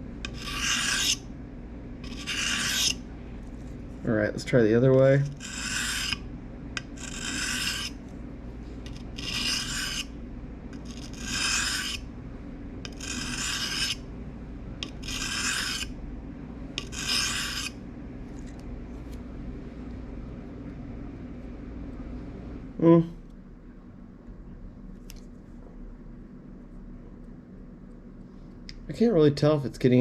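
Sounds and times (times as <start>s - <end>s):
knife scraping on sharpening stone: 0.2s - 1.2s, 2.0s - 3.0s, 5.3s - 6.2s, 6.9s - 8.0s, 8.9s - 10.1s, 10.8s - 12.0s, 12.9s - 14.0s, 14.8s - 15.9s, 16.8s - 17.8s.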